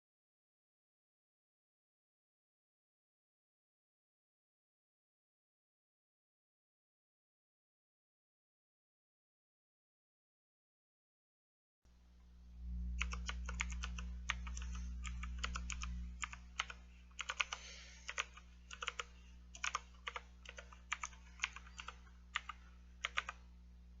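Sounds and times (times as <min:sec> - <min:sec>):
low hum: 0:11.9 - 0:24.0
mechanical keyboard typing: 0:13.0 - 0:23.4.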